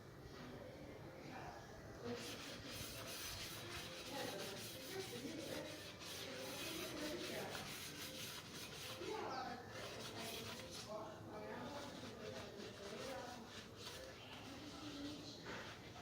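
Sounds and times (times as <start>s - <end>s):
rough rubbing strokes: 2.1s - 11.0s, 11.6s - 16.0s.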